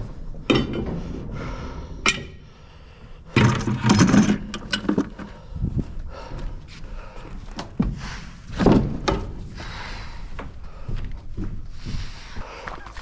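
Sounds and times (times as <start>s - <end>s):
metal clinks and knocks: 0.4s - 1.1s.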